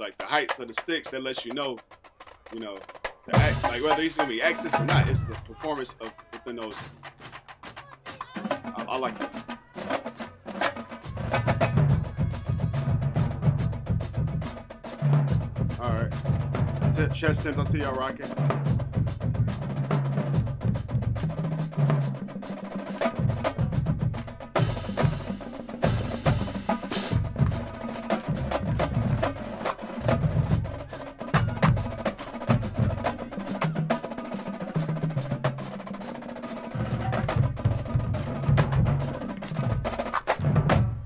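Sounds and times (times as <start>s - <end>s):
snare drums and quads: 0.0s - 41.0s
bass drums low notes: 3.4s - 3.9s, 15.2s - 21.4s, 23.2s - 29.4s, 36.8s - 41.0s.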